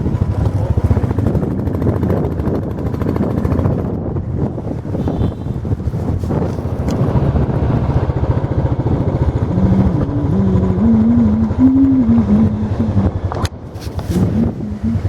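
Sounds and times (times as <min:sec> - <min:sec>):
motorcycle engine rumbling: 0:00.0 - 0:15.0
held tone stepping in pitch: 0:09.5 - 0:13.4, 0:14.2 - 0:15.0.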